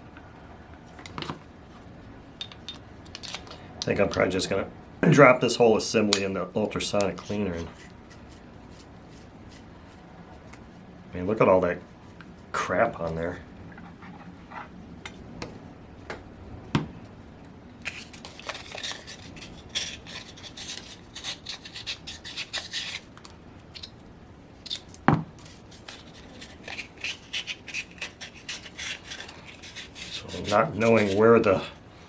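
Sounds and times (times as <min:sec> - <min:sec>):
hand scraping metal parts: 0:17.8 - 0:23.9, 0:24.6 - 0:31.8.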